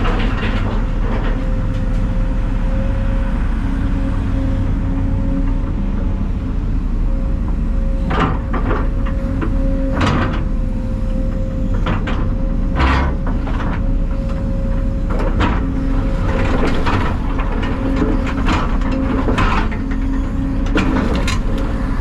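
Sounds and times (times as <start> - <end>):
clunks and rattles: 0.0 - 2.2, 7.5 - 22.0
constant whine: 0.0 - 22.0
heavy diesel engine running: 0.0 - 22.0.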